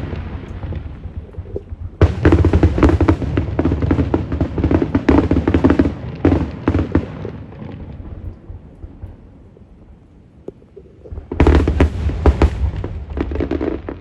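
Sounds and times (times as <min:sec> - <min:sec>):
loud firework bang: 0:00.0 - 0:08.3, 0:11.1 - 0:14.0
fireworks bursting and crackling: 0:00.0 - 0:14.0.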